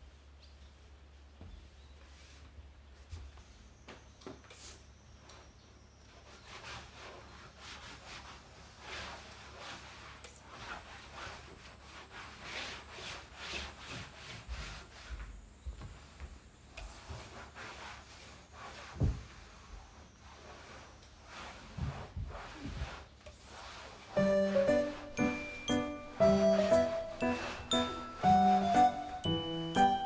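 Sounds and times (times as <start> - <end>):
rubbing on hard surface: 6.2 - 15.4, 16.8 - 30.0.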